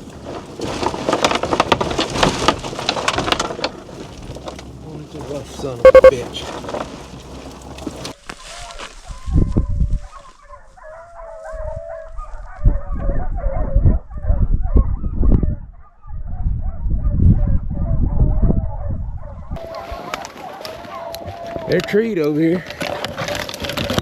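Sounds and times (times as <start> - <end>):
wind buffeting microphone: 11.6 - 20.2.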